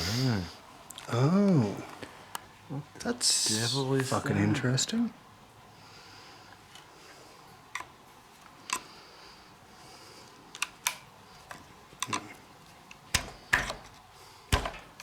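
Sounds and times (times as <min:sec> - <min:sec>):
hand tools clicking and knocking: 0:10.9 - 0:15.0.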